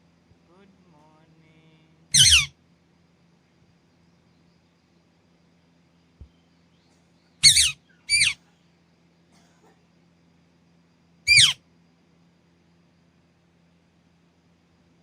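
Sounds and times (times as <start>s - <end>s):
parakeet squawks: 2.1s - 2.5s, 7.4s - 8.4s, 11.3s - 11.6s.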